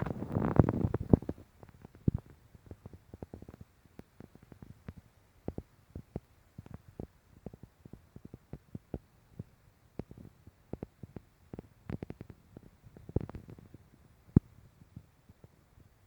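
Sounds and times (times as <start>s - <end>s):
underwater rushing and popping: 0.0s - 1.4s.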